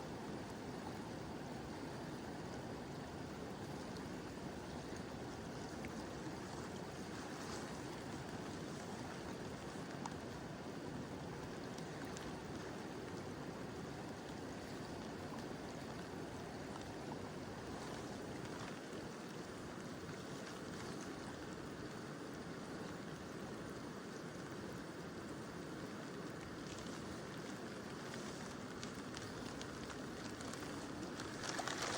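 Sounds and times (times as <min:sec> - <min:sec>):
light rain ticks: 0:11.4 - 0:13.2, 0:25.3 - 0:31.9.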